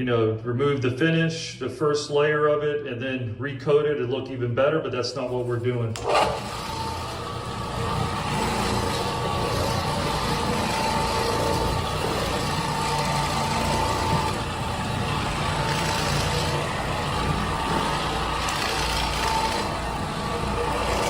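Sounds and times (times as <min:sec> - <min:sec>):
floor cleaning machine running: 0:05.9 - 0:21.0.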